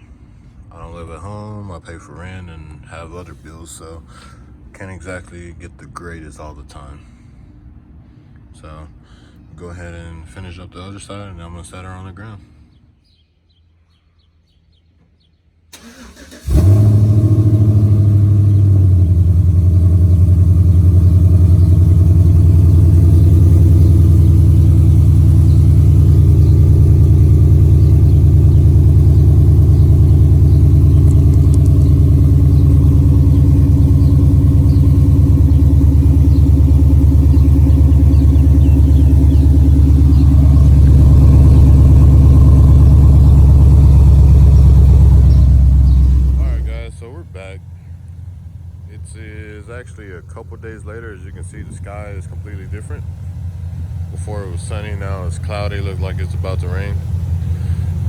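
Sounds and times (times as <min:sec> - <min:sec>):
pickup engine starting and idling: 0:15.7 - 0:58.0.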